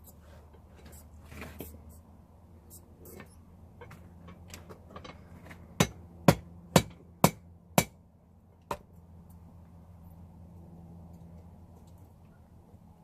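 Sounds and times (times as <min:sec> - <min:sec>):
hammer striking metal on anvil: 0:05.8 - 0:08.0.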